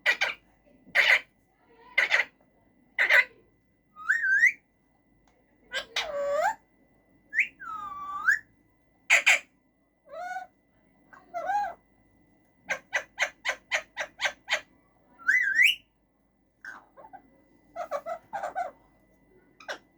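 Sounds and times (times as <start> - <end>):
parakeet calling and squawking: 0.0 - 0.4, 1.0 - 1.3, 1.9 - 2.4, 3.0 - 3.4, 4.0 - 4.6, 5.7 - 6.6, 7.4 - 8.5, 9.1 - 9.5, 11.1 - 11.8, 12.7 - 15.9, 16.6 - 18.8, 19.6 - 19.9.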